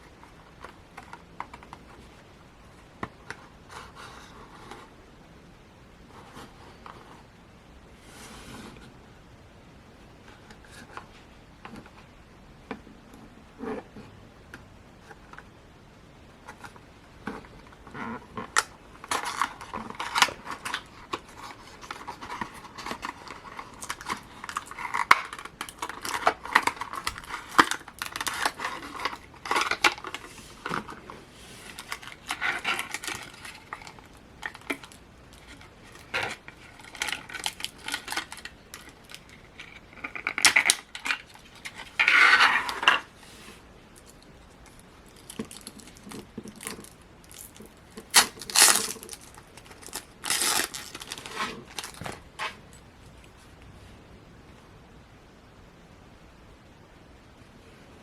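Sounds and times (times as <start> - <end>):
plastic packaging crinkling and clicking: 16.5 - 43.2, 44.0 - 53.3.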